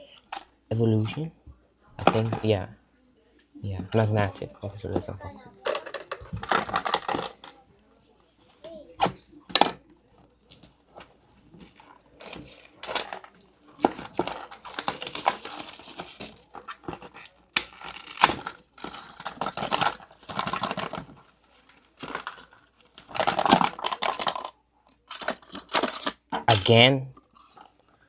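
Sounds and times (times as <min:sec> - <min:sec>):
plastic wrap and box crinkling: 0:10.4 - 0:26.2.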